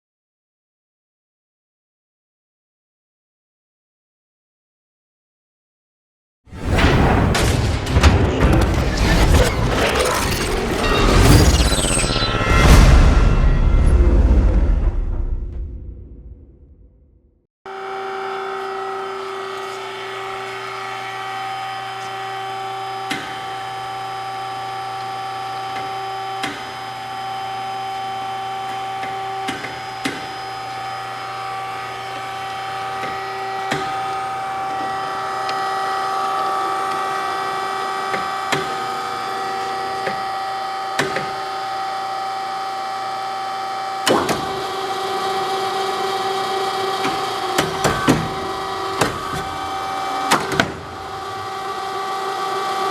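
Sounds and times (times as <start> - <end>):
cold saw humming and whining: 17.7 - 52.9.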